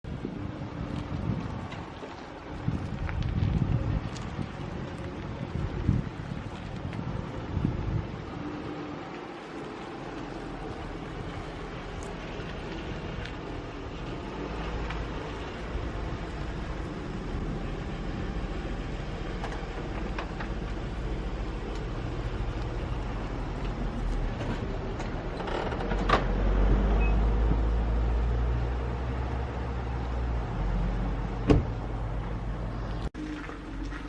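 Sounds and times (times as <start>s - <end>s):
engine humming steadily: 0.1s - 34.0s.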